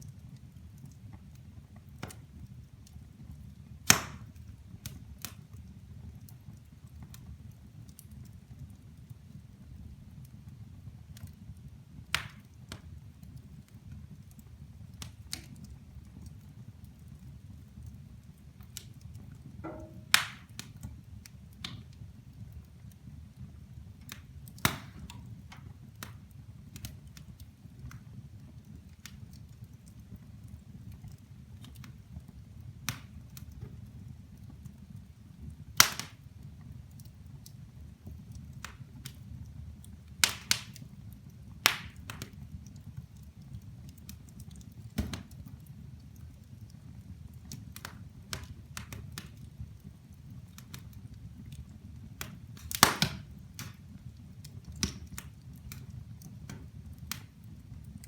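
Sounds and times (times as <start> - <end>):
firewood crackling and popping: 0.0 - 58.0
low fire rumble: 0.0 - 58.0.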